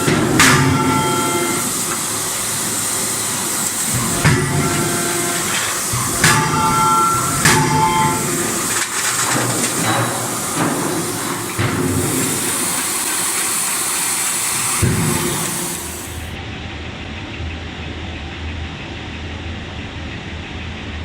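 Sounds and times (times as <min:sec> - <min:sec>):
forging hammer heavy blows: 0:00.0 - 0:16.3
loud hiss: 0:00.0 - 0:16.4
low machine hum: 0:00.0 - 0:21.0.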